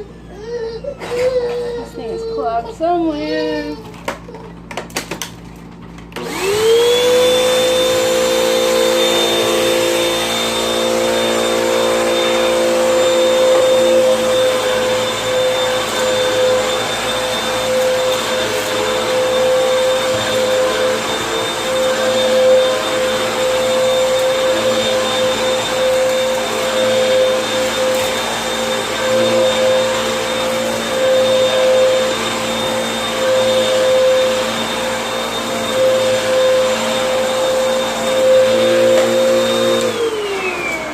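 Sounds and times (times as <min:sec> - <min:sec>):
vacuum cleaner motor whine: 0:00.0 - 0:40.9.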